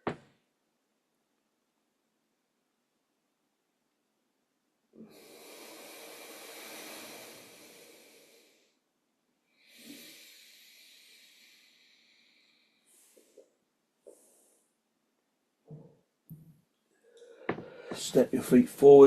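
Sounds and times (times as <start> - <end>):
slow airy breaths: 5.0 - 8.9, 9.5 - 14.8, 16.9 - 19.0.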